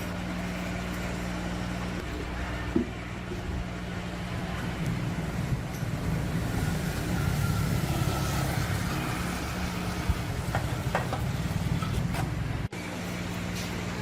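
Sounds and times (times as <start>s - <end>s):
small motorcycle engine running: 4.1s - 12.7s.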